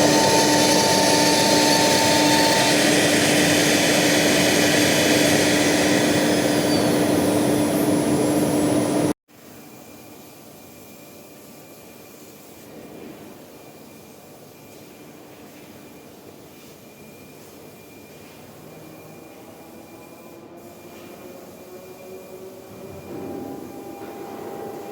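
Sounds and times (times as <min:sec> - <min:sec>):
router spindle hissing cut: 0:00.0 - 0:09.0
steady machine hum: 0:00.0 - 0:09.2.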